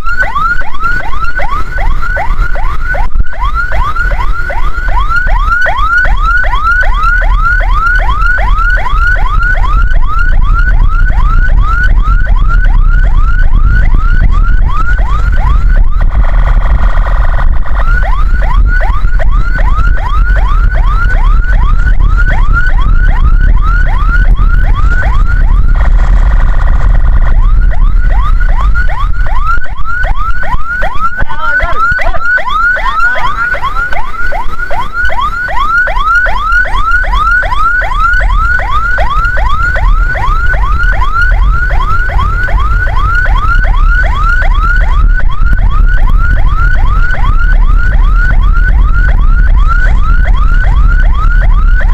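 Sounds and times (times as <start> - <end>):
ambulance siren yelp: 0.0 - 51.9
low vehicle rumble: 0.0 - 51.9.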